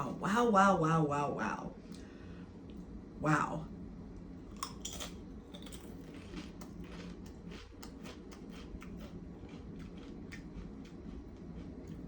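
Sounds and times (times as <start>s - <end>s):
chewing crunchy chips: 4.4s - 12.0s.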